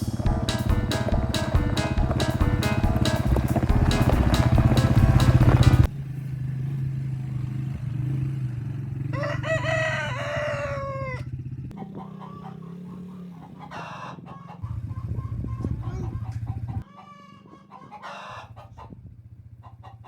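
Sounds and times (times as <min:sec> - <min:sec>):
quad bike engine humming: 0:00.0 - 0:16.8
rooster crowing: 0:09.1 - 0:14.8, 0:16.8 - 0:18.6
chicken clucking: 0:09.2 - 0:19.0, 0:19.6 - 0:20.0.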